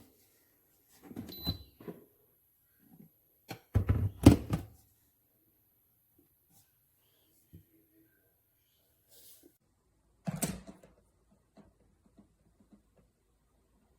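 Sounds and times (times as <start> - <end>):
objects knocking and thumping: 3.5 - 4.7.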